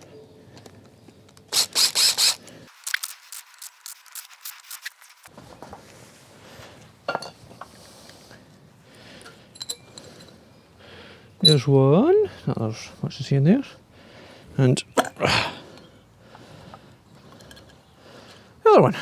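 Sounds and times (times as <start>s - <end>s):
impact driver rattling: 1.5s - 3.0s
metal screws clinking: 1.5s - 5.2s.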